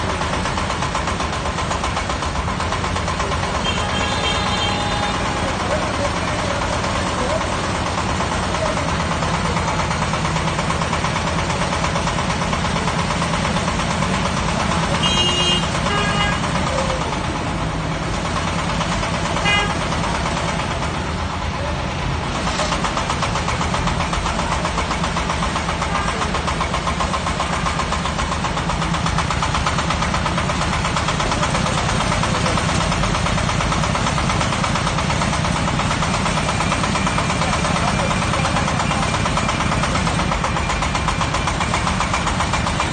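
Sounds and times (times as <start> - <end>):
drilling rig engine running: 0.0 - 42.9.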